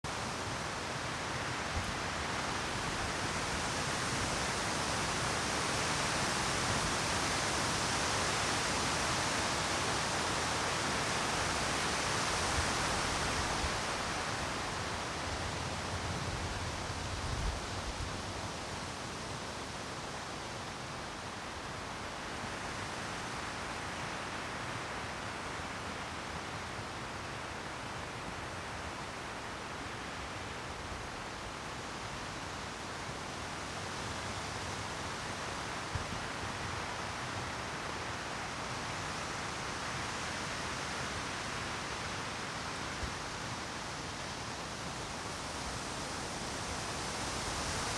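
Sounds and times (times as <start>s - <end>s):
wind in trees: 0.0s - 47.9s.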